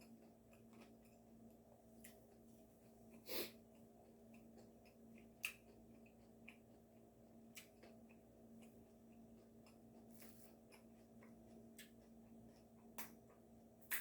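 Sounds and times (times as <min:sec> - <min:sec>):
low steady hum: 0:00.0 - 0:14.0
person sniffing: 0:03.2 - 0:03.6.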